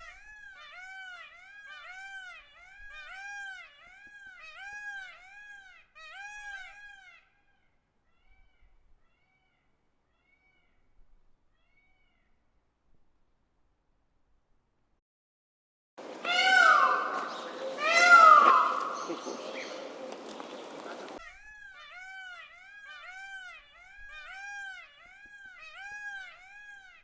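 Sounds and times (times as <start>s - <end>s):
peacock mewing calls: 16.0s - 21.2s.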